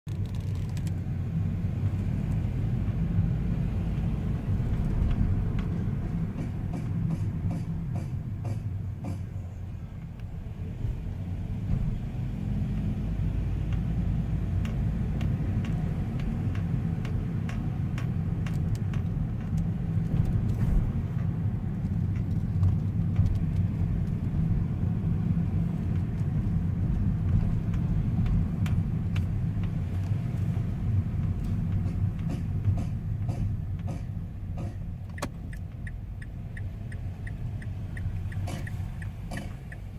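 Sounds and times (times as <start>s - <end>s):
car engine and road rumble: 0.0s - 39.9s.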